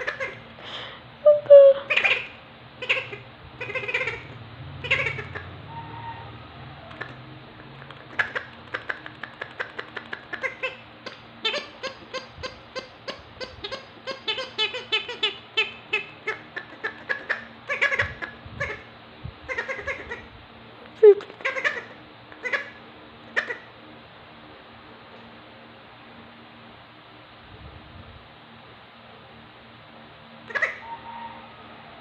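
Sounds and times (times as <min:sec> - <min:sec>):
squeaky toy squeaking: 0:01.3 - 0:05.3, 0:10.4 - 0:18.8.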